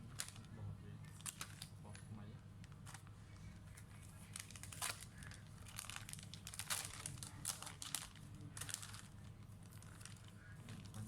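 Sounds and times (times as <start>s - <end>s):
plastic crinkling: 4.3s - 11.0s.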